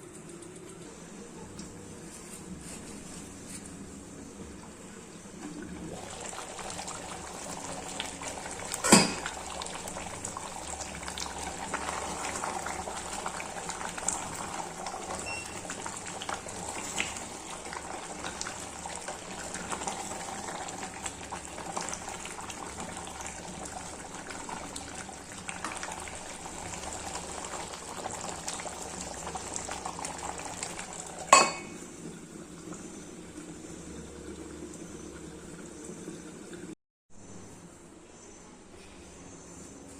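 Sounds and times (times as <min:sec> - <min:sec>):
curry bubbling in a pot: 0:05.4 - 0:36.8.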